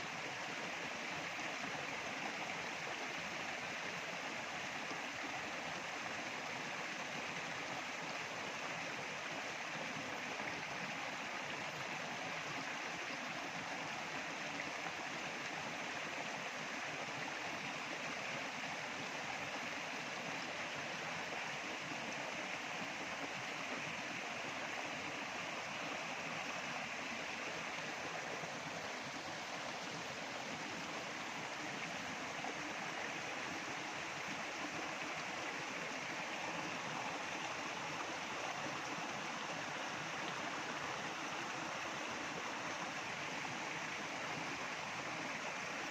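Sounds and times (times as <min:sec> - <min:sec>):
running water: 0:16.6 - 0:45.9.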